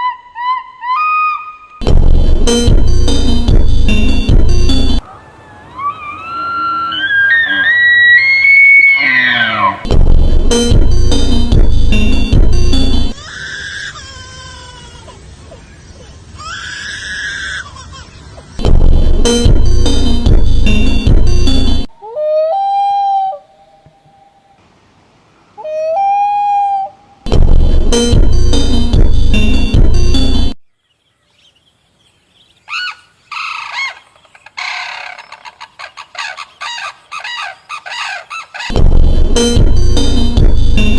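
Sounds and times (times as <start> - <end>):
bird calling: 0.0 - 1.8, 5.0 - 9.9, 25.4 - 27.2, 31.0 - 38.8
loud music: 1.8 - 5.0, 9.9 - 13.2, 18.6 - 21.9, 27.3 - 30.6, 38.7 - 40.9
animal crying: 5.0 - 9.9, 13.2 - 18.3, 22.0 - 23.5, 25.6 - 27.1, 32.7 - 38.8
faint falling animal calls: 5.0 - 9.9.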